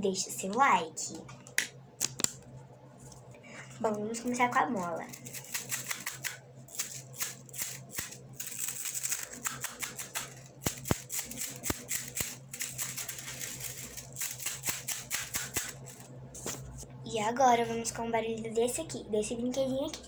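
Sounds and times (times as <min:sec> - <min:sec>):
spring coils clicking and rattling: 0:04.2 - 0:16.6.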